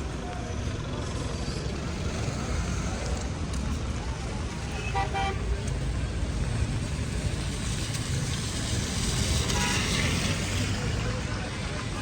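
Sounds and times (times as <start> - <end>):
traffic engine rumble: 0.0 - 12.0
heavy rain: 6.0 - 12.0
tyre hiss on wet road: 6.8 - 11.0.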